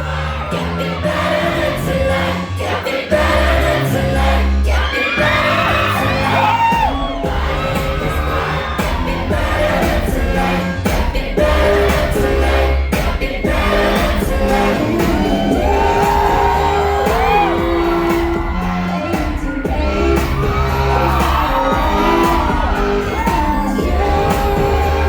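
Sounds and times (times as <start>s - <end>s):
heavy bass beat: 0.0s - 25.0s
audience shouting: 4.4s - 25.0s.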